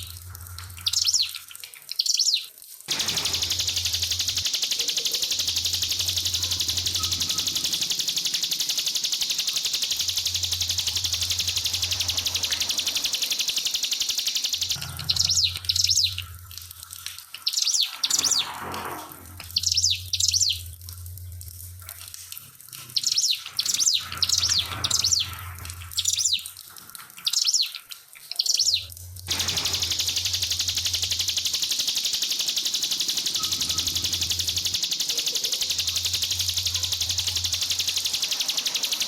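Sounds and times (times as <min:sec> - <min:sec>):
bird singing in rapid bursts: 0:00.0 - 0:16.6, 0:17.4 - 0:18.6, 0:19.4 - 0:20.8, 0:22.9 - 0:26.5, 0:27.2 - 0:27.8, 0:28.4 - 0:39.0
trickling water hiss: 0:02.8 - 0:19.4, 0:29.2 - 0:39.0
low hum: 0:02.9 - 0:17.0, 0:28.9 - 0:39.0.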